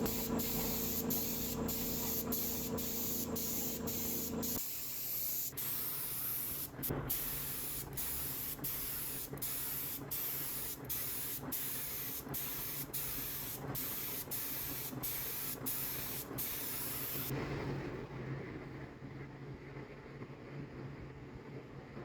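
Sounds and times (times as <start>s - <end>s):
spray hissing: 0.0s - 17.3s.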